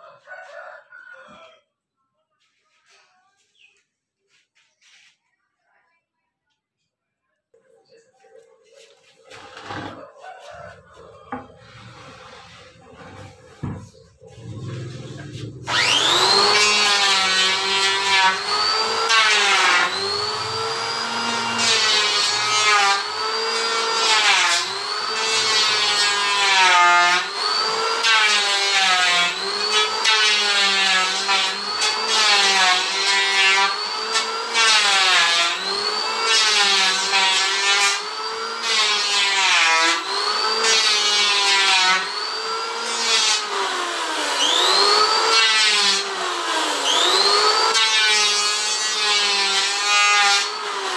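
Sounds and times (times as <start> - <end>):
electric wood planer cutting: 9.4 - 10.0, 11.0 - 50.9.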